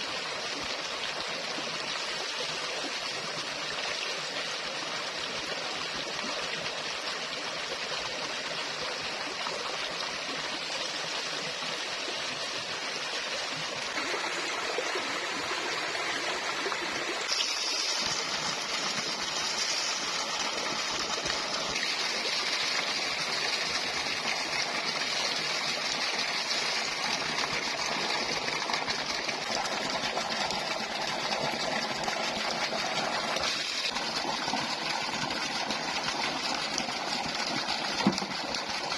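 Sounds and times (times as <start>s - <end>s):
stream water rushing: 9.1s - 38.9s.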